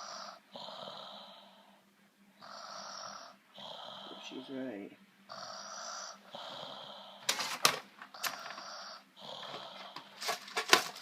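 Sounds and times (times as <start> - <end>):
loud wheezy snoring: 0.0 - 1.8, 2.4 - 4.5, 5.3 - 7.3, 8.1 - 10.1.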